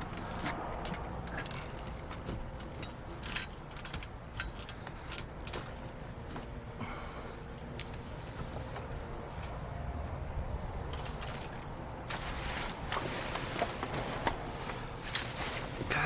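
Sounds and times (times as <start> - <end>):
trash rustling: 11.0 - 16.0.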